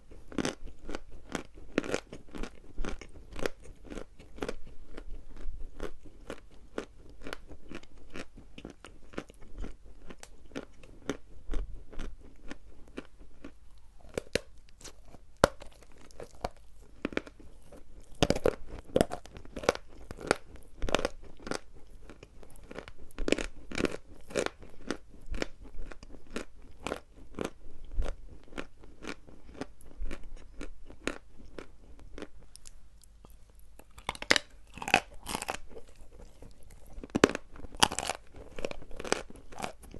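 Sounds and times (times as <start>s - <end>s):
chalk crunching while chewed: 0.1s - 39.9s.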